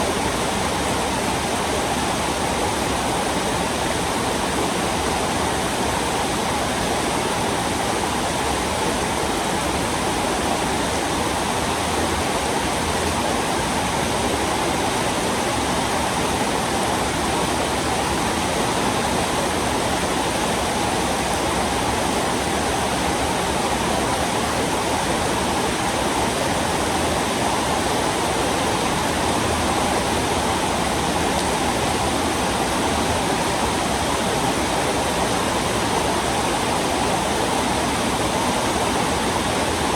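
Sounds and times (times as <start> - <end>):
heavy rain falling: 8.0 - 39.9.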